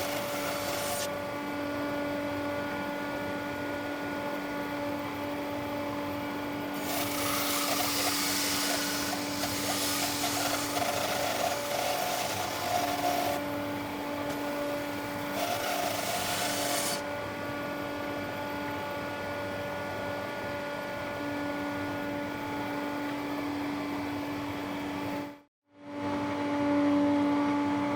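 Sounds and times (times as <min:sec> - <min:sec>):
bandsaw humming: 0:00.0 - 0:01.1, 0:06.7 - 0:13.4, 0:14.3 - 0:17.1
saw blade rasping through log: 0:00.0 - 0:01.1, 0:06.8 - 0:13.4, 0:15.3 - 0:17.0.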